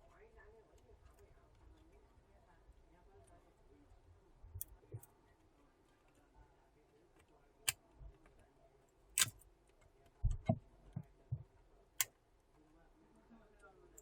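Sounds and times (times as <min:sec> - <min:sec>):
small tools clicking on phone parts: 0:09.2 - 0:10.6.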